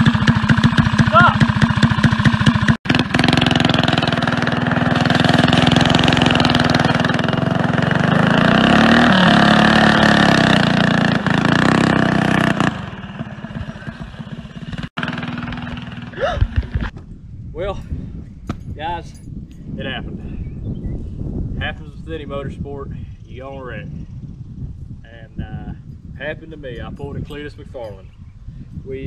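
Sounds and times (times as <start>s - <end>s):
small engine revving high: 0.0s - 16.6s.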